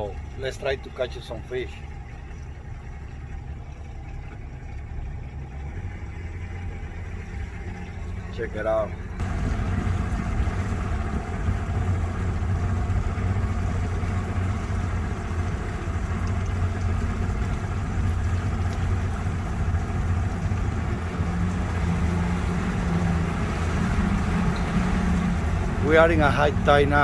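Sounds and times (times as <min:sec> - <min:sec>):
boat engine humming: 0:00.0 - 0:27.0
rushing water and wind: 0:07.5 - 0:27.0
higher hum: 0:08.9 - 0:27.0.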